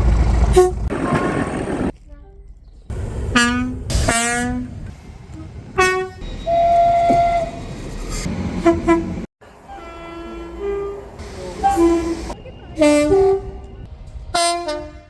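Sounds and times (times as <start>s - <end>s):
train rumble: 0.0s - 15.0s
train horn blasts: 3.3s - 7.6s, 8.6s - 15.0s.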